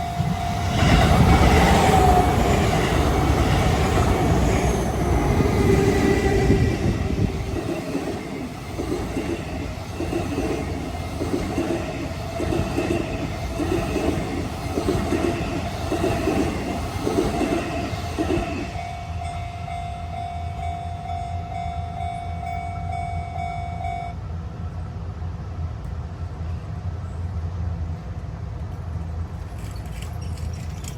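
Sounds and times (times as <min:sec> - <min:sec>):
train wheels clacking over joints: 0:00.3 - 0:18.9, 0:29.3 - 0:30.9.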